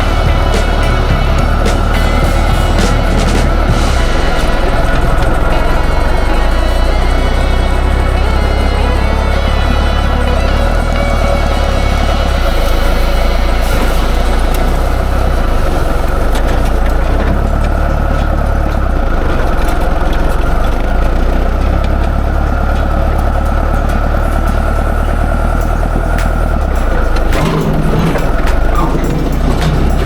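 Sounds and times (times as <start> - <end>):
heavy diesel engine rumbling: 0.0 - 30.0.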